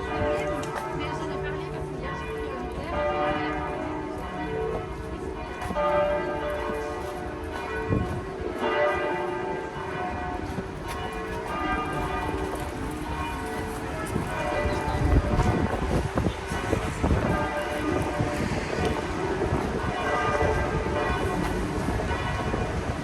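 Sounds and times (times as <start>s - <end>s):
church bells pealing: 0.0s - 23.0s.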